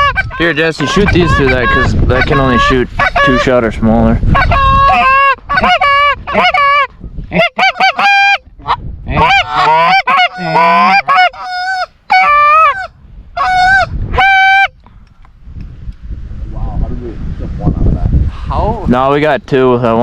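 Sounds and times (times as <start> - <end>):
goose honking: 0.0 - 3.6, 4.4 - 14.7.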